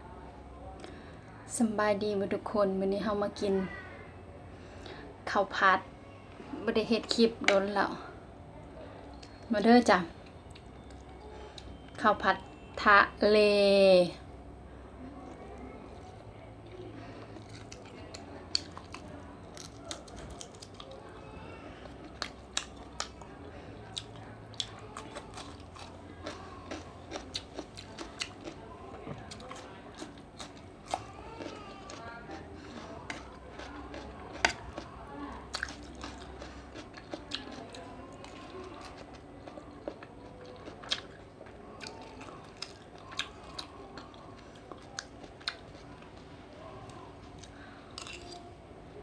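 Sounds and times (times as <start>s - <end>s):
person chewing food: 15.2s - 48.5s.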